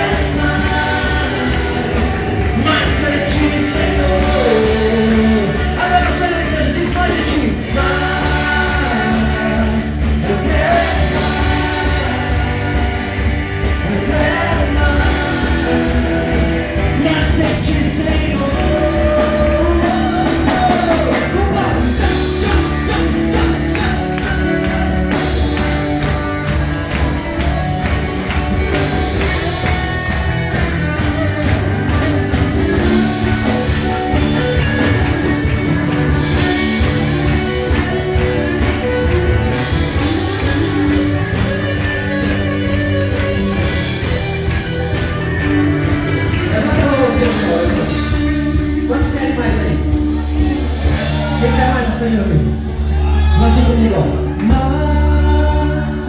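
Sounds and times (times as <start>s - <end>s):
people singing: 0.0s - 27.6s
worship band playing rock: 0.0s - 56.0s.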